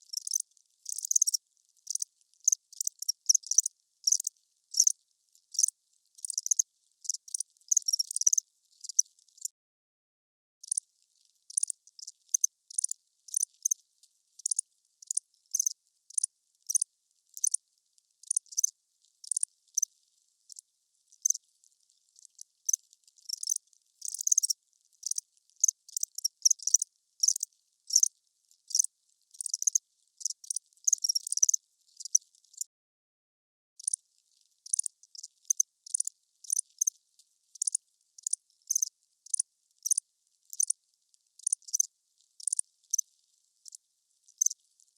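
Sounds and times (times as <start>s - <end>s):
crickets chirping: 0.1s - 4.9s, 5.5s - 9.0s, 11.5s - 13.8s, 14.4s - 16.8s, 17.4s - 17.6s, 18.2s - 19.9s, 22.7s - 28.1s, 28.7s - 32.2s, 34.7s - 36.9s, 37.6s - 40.7s, 41.4s - 43.0s.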